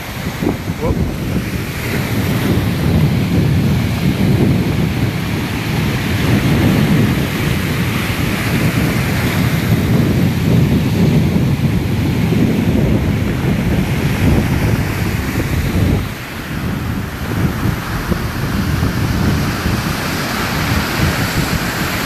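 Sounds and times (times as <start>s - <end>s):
surf breaking on shore: 0.0s - 22.0s
wind buffeting microphone: 0.0s - 22.0s.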